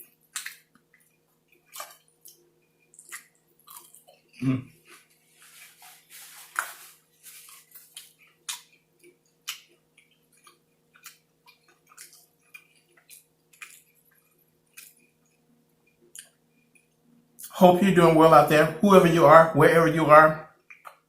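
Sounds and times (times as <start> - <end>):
chewing with wet mouth smacks: 0.0 - 5.1, 6.5 - 17.5
faint steady hum: 0.0 - 21.0.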